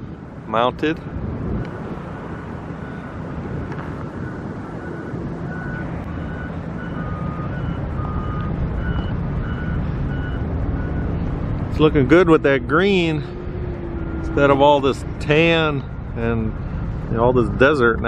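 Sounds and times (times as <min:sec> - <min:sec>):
heavy machinery engine rumble: 0:00.0 - 0:18.0
reversing alarm beeping: 0:04.2 - 0:11.1.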